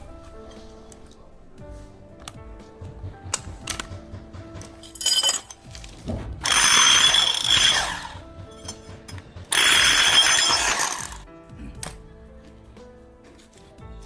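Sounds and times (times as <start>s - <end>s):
background music: 0.0s - 14.0s
impact drill hammering: 6.4s - 8.2s, 9.5s - 11.2s.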